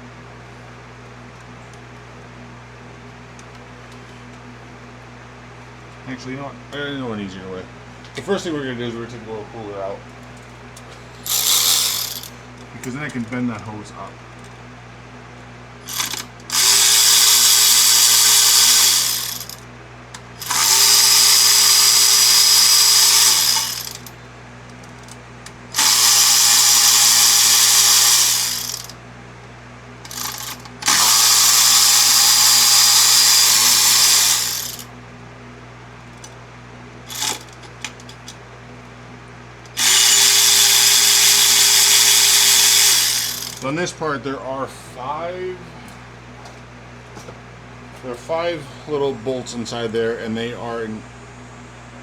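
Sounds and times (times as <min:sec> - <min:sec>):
cordless power tool whine: 0:11.2 - 0:12.4, 0:15.8 - 0:19.6, 0:20.4 - 0:24.2, 0:25.7 - 0:29.0, 0:30.0 - 0:34.9, 0:37.1 - 0:38.3, 0:39.7 - 0:43.7.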